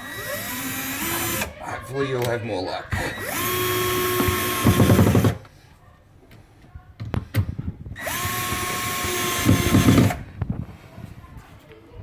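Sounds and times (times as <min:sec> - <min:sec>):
drill-driver whining and rattling: 0:00.0 - 0:01.5, 0:03.1 - 0:05.5, 0:08.0 - 0:10.3.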